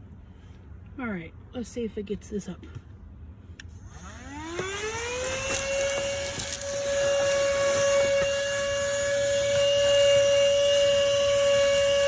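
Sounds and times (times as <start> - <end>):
handheld vacuum motor whine: 3.9 - 12.0.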